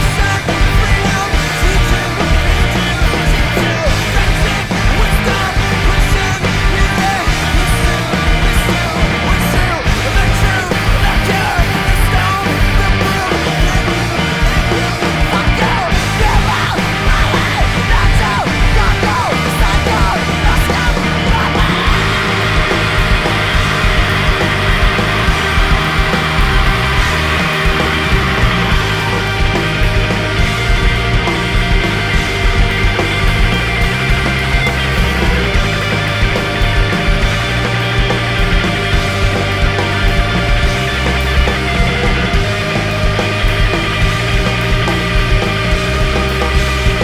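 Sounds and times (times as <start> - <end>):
post-punk band music: 0.0 - 47.0
shouted vocals: 0.0 - 47.0.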